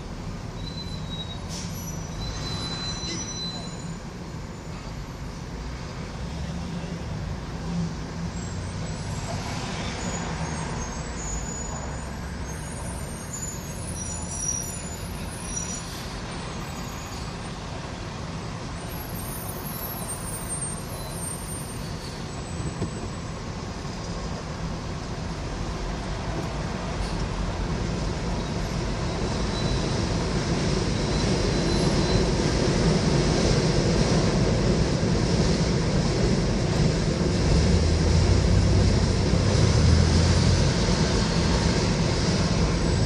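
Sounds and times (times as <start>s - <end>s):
subway train rumbling: 0.0s - 43.0s
high-pitched wheel squeaks: 0.6s - 4.0s.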